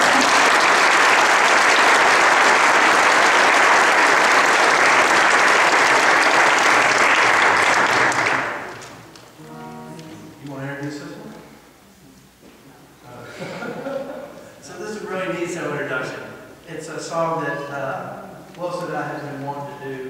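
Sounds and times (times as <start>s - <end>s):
audience applauding: 0.0s - 10.1s.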